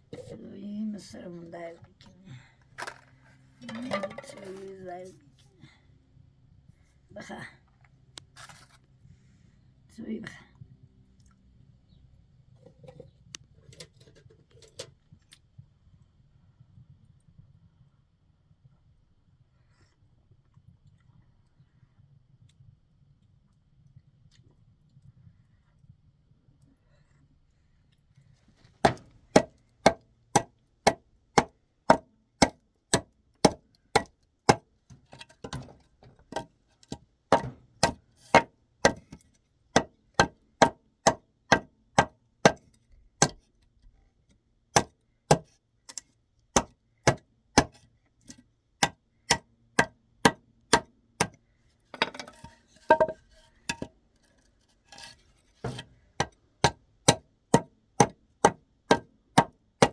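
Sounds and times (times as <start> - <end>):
hammer driving nails into wood: 28.8 - 39.2.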